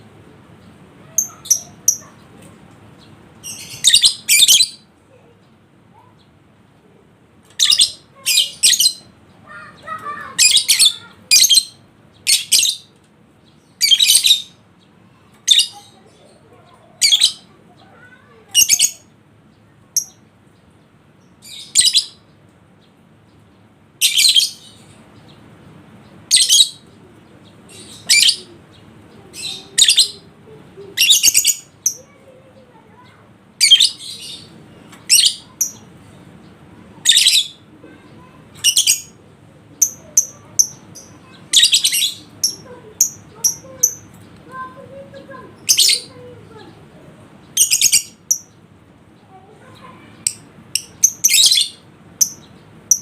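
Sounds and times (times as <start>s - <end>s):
lovebird shrill chirps: 1.2s - 2.2s, 3.5s - 4.8s, 47.6s - 48.5s, 50.2s - 53.0s.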